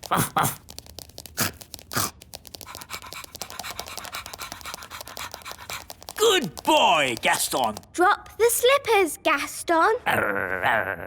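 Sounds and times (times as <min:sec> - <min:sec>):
cartoon pattering scuttle: 0:00.0 - 0:08.7.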